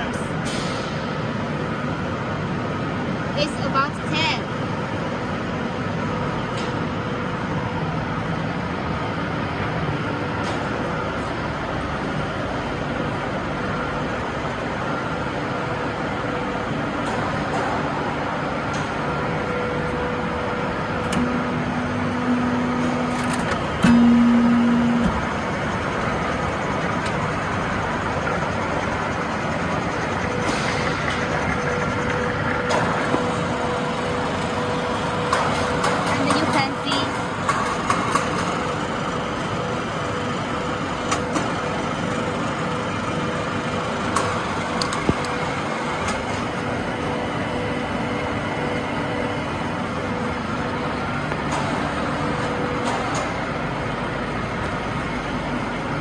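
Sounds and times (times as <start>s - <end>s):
factory machinery rumble: 0.0s - 56.0s
loud low hum: 0.0s - 56.0s
faint hum: 17.9s - 36.4s.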